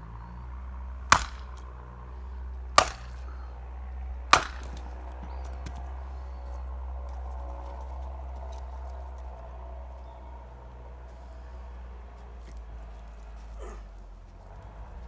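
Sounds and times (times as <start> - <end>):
axe chopping firewood: 1.1 - 2.0, 2.7 - 3.6, 4.2 - 5.9.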